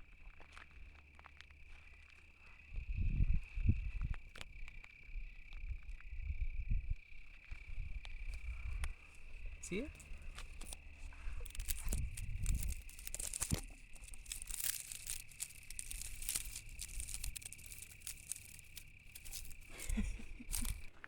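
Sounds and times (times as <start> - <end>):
dry grass rustling and crackling: 7.4 - 21.0.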